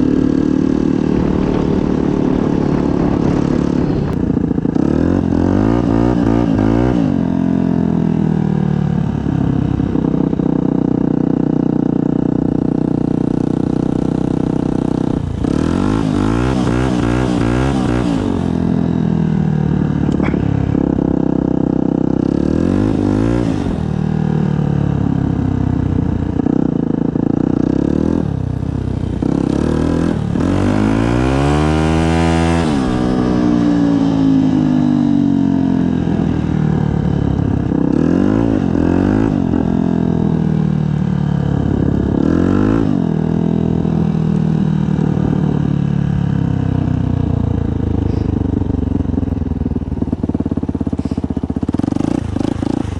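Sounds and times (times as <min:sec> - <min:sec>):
motorcycle engine revving: 0:00.0 - 0:52.9.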